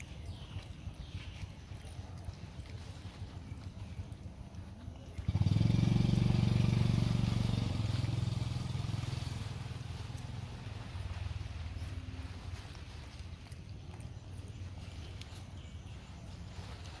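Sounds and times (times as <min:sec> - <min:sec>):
vehicle engine starting and running: 0:05.2 - 0:11.2.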